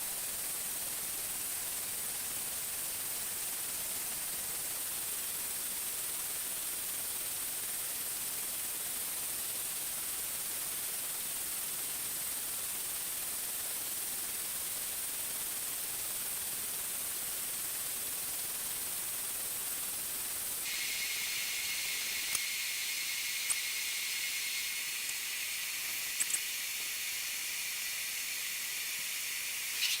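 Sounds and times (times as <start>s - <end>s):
welding arc hissing: 8.8s - 30.0s.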